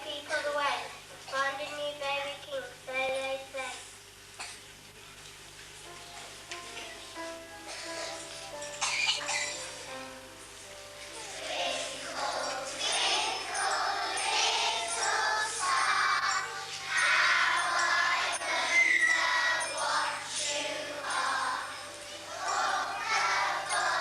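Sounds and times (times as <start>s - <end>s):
choir singing christmas music: 10.9s - 24.0s.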